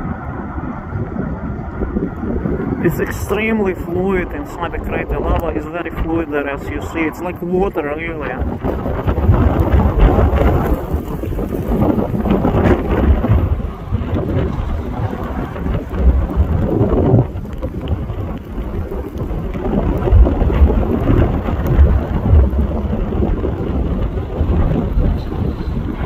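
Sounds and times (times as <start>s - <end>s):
volcano deep rumble: 0.0s - 26.0s.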